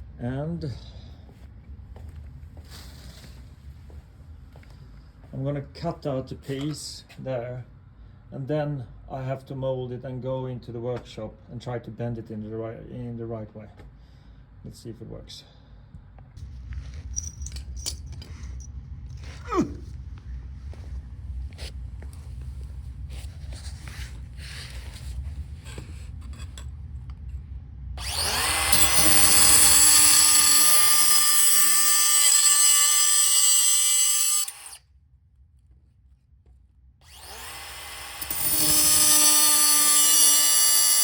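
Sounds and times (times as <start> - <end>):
power tool cutting sheet steel: 28.0 - 34.8, 37.1 - 41.0.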